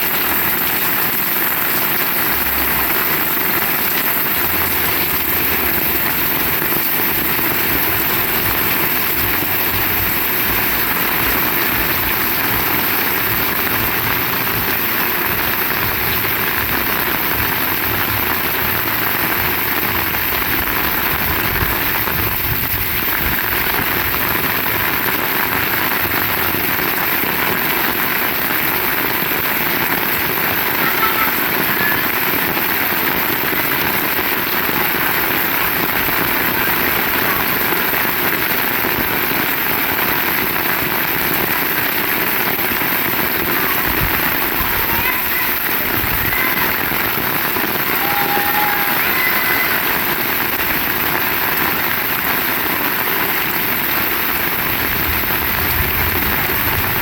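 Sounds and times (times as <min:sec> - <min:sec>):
heavy rain hissing: 0:00.0 - 0:57.0
faint low rumble: 0:54.8 - 0:57.0.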